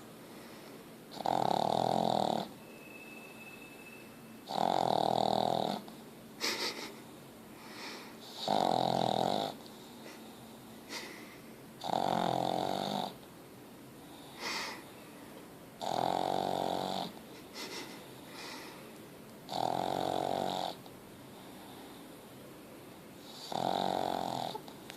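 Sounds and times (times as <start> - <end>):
dog snoring: 1.1 - 2.6, 4.4 - 5.9, 8.2 - 9.6, 11.8 - 13.2, 15.8 - 17.2, 19.5 - 20.8, 23.2 - 24.7.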